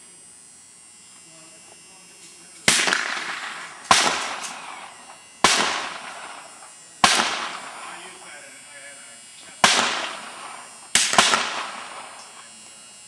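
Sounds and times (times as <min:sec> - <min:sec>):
rifle shots with echo: 0:02.7 - 0:08.3, 0:09.6 - 0:12.5.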